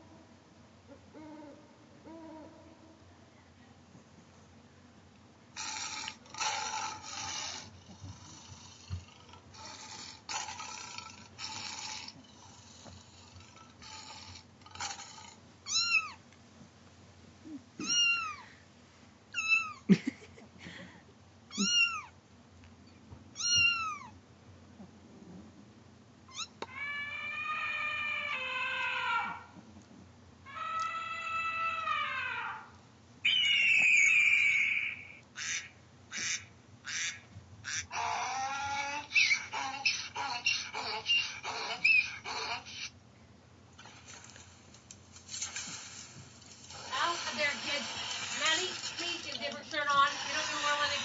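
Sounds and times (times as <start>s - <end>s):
cat meowing: 15.6s - 16.2s, 17.8s - 18.5s, 19.3s - 19.8s, 21.5s - 22.1s, 23.4s - 24.2s, 26.3s - 29.4s.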